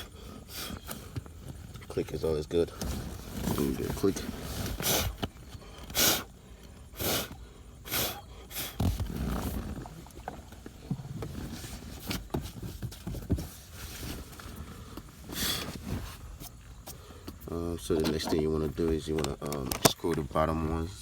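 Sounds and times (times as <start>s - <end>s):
rubbing and handling noise: 0.0s - 21.0s
plastic trim clicks and knocks: 18.9s - 20.3s.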